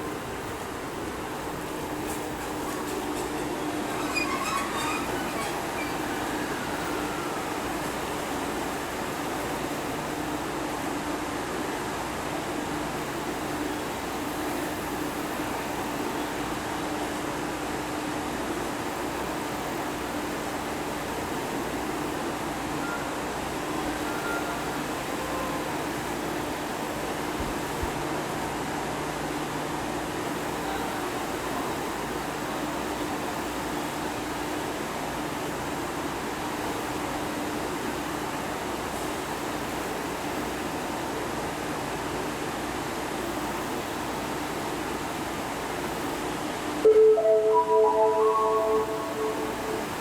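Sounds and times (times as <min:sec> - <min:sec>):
train air-conditioning hum: 0:00.0 - 0:50.0
electric train equipment hum: 0:45.8 - 0:50.0
faint falling whine: 0:46.8 - 0:50.0.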